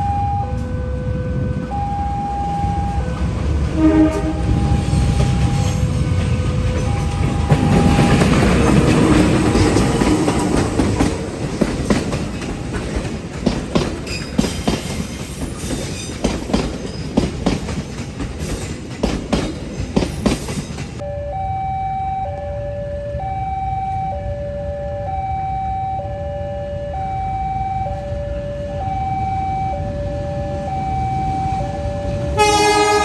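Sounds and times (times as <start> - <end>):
train wheels clattering: 3.0 - 21.0
electronic two-tone signal: 21.0 - 26.2.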